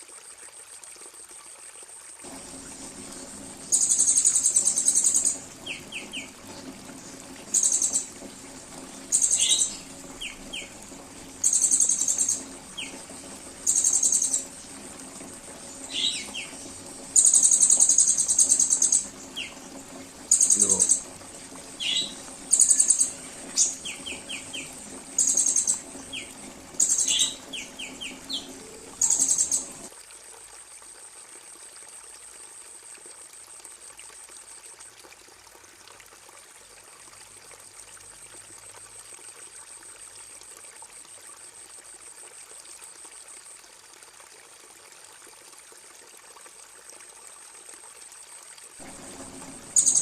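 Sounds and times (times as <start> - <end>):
faint high buzzing trill: 2.3 - 29.9, 48.8 - 50.0
songbird trilling: 3.6 - 6.4, 7.0 - 8.2, 9.0 - 10.8, 11.4 - 14.6, 15.7 - 29.9, 49.6 - 50.0
bird chirps: 3.6 - 8.2, 9.0 - 10.8, 11.4 - 14.7, 15.6 - 29.9, 49.2 - 50.0.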